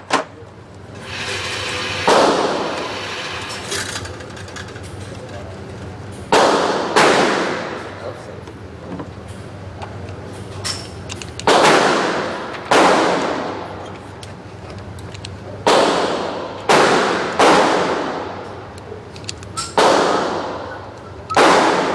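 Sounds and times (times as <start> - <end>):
pistol shots echoing: 21.4 - 21.9.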